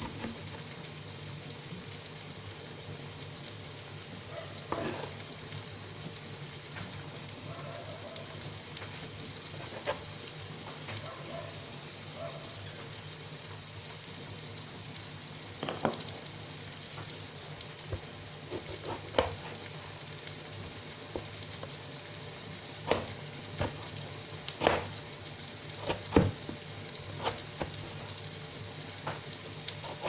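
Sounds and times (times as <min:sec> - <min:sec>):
vegetables sizzling in oil: 0:00.0 - 0:30.0.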